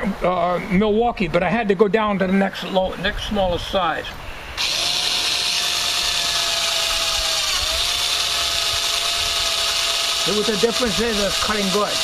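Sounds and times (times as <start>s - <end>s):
cordless drill drilling into metal: 4.6s - 12.0s.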